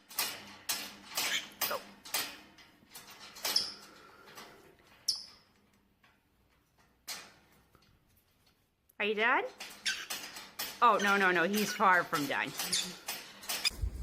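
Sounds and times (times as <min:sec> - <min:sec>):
small animal scratchy rustling: 0:13.6 - 0:14.0.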